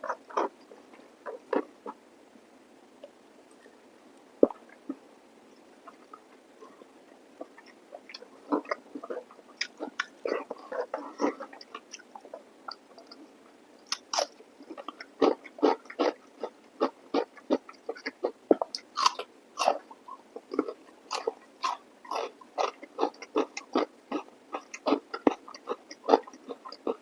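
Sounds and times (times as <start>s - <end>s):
person chewing: 7.4s - 13.2s, 13.9s - 27.0s.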